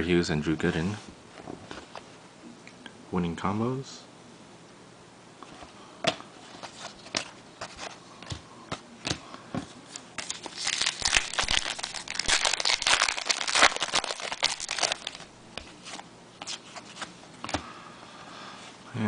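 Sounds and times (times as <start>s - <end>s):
wrapper crinkling and tearing: 10.2s - 16.0s.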